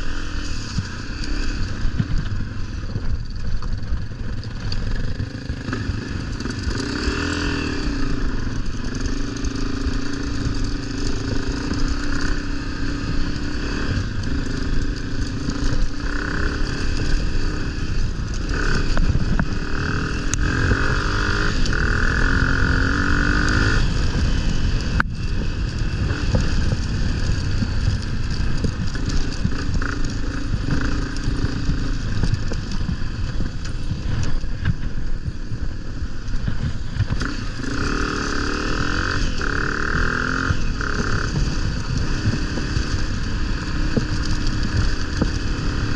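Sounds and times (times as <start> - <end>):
vehicle engine revving: 4.3 - 24.8.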